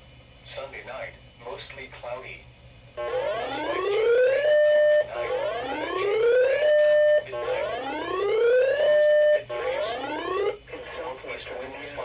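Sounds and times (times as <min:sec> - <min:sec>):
radio alert siren wail: 0:03.0 - 0:10.6.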